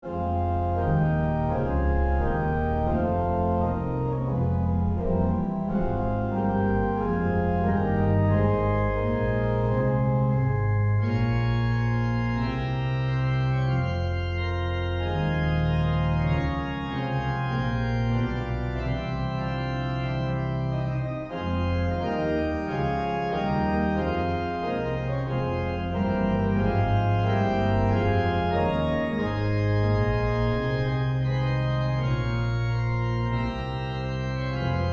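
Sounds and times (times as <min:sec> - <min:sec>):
organ playing sustained chords: 0:00.0 - 0:34.9.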